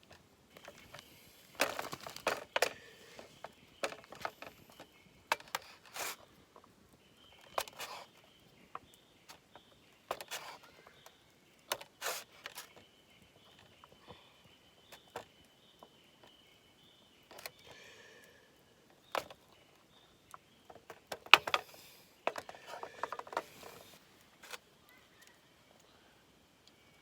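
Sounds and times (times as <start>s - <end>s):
rustles and clicks of handling: 0.0s - 25.9s.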